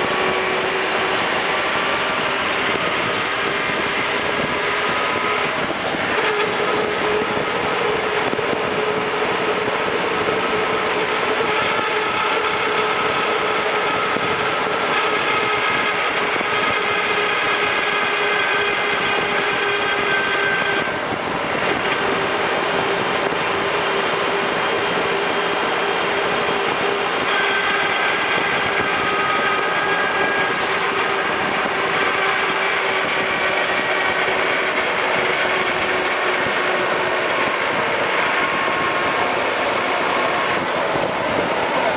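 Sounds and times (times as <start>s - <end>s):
vehicle road and drivetrain noise: 0.0s - 41.9s
whining tones: 0.0s - 41.9s.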